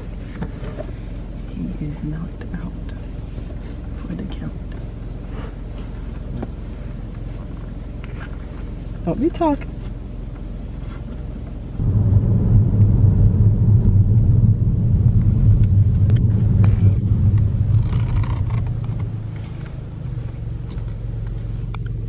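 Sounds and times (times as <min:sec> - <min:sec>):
low car rumble: 0:00.0 - 0:22.0.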